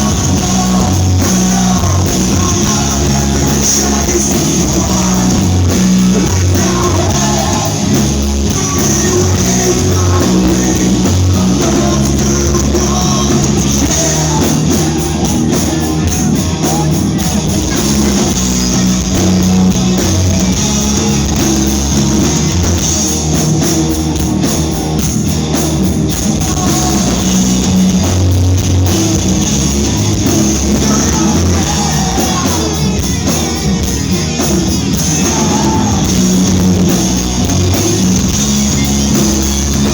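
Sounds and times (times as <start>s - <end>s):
person singing: 0.0s - 18.3s, 26.2s - 28.0s, 30.2s - 33.9s, 34.8s - 37.9s
drum kit: 0.0s - 39.9s
electric guitars: 0.0s - 39.9s.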